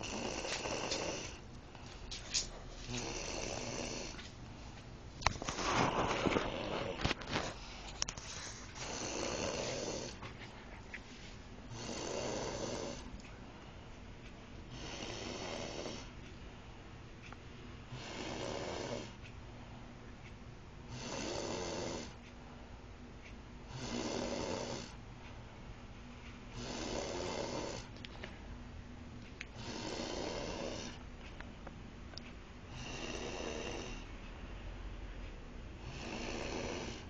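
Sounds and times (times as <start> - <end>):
person snoring: 0.0 - 1.4, 2.8 - 4.2, 5.4 - 7.7, 8.8 - 10.2, 11.7 - 13.1, 14.7 - 16.1, 17.9 - 19.1, 20.9 - 22.2, 23.7 - 25.0, 26.6 - 27.9, 29.6 - 31.0, 32.7 - 34.1, 35.8 - 37.0.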